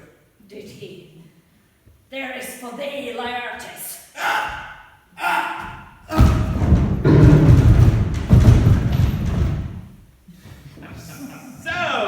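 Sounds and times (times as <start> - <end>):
man crying out: 4.2 - 6.5
deep rumbling thud: 5.7 - 10.0.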